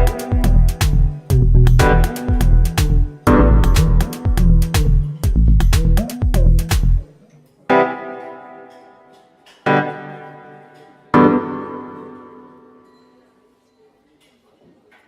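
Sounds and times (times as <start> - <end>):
drum and bass beat: 0.0 - 7.1
piano chords ringing: 0.0 - 13.3.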